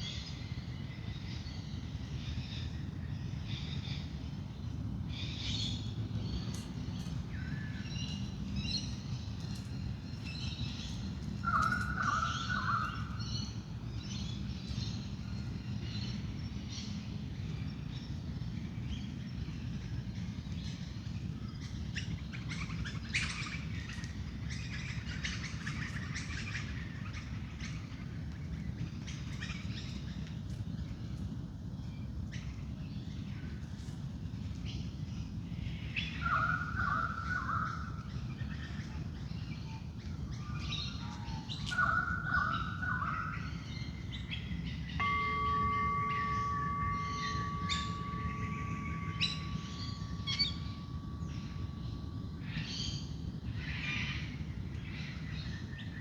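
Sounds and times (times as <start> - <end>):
birds chirping and calling: 45.0 - 52.0
bird call with falling notes: 45.0 - 53.1.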